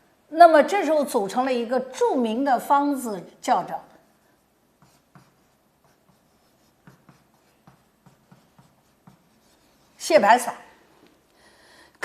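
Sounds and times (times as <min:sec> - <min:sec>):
pen scratching while writing: 0:04.8 - 0:10.0.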